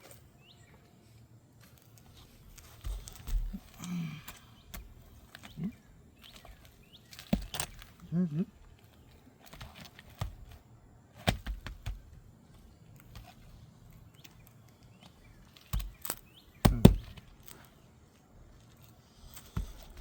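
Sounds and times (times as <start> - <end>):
hand tools knocking on roof shingles: 11.2 - 12.2, 15.7 - 17.5.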